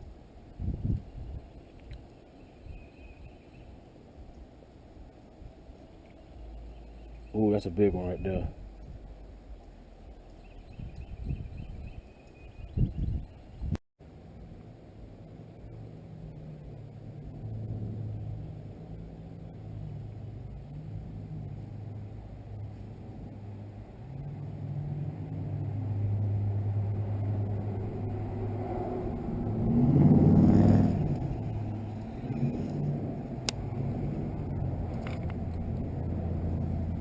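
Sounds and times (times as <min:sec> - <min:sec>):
low motor hum: 0:08.4 - 0:37.0.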